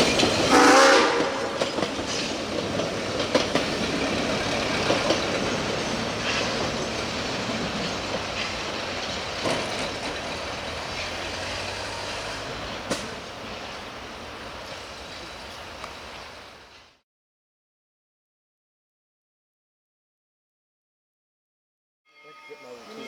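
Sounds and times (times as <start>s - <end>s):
sharp click from train wheels: 0.0s - 16.9s
train rumbling: 0.0s - 17.0s.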